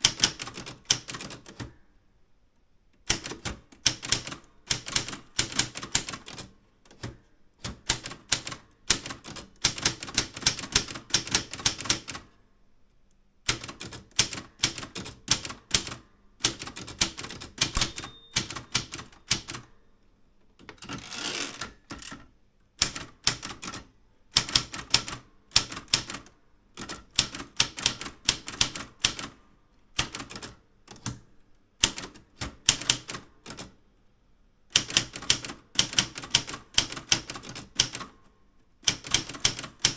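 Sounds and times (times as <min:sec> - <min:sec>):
typewriter keys striking: 0:13.5 - 0:19.6
typewriter carriage return: 0:16.5 - 0:19.6, 0:20.7 - 0:22.2
typewriter bell ding: 0:17.7 - 0:19.6.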